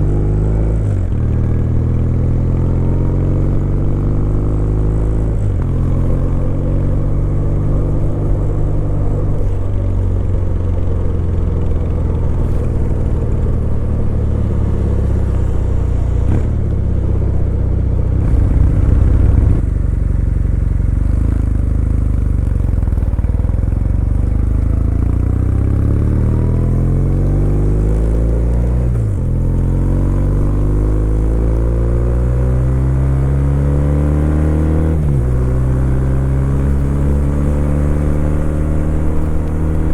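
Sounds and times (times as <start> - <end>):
motorcycle engine accelerating: 0.0 - 39.9
gear change: 5.0 - 32.0
rush of noise: 11.7 - 21.5.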